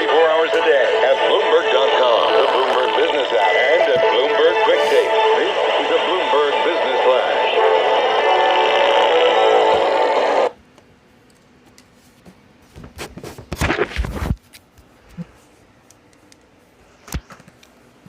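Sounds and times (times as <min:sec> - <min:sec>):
hissy radio audio: 0:00.0 - 0:10.5.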